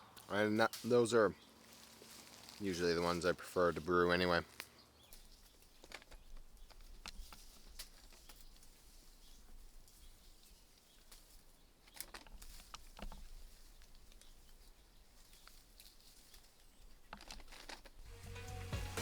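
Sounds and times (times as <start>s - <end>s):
rustling leaves and twigs: 0.0s - 19.0s
music: 18.0s - 19.0s.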